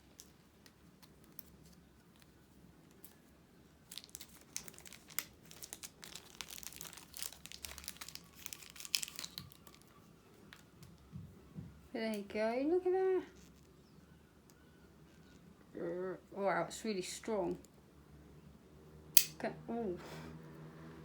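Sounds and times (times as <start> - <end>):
packaging crinkling: 0.0 - 10.8.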